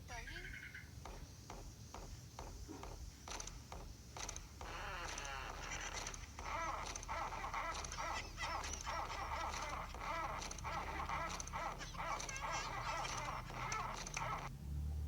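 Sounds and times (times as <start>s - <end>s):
pet animal whining: 4.6s - 14.5s.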